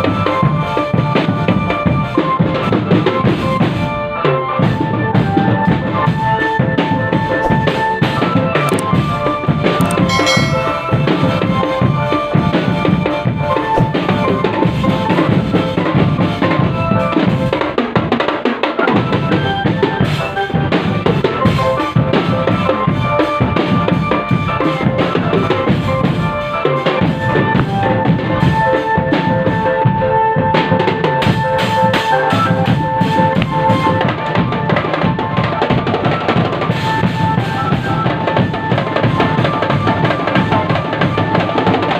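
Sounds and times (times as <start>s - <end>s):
melody of held notes: 9.8s - 12.2s.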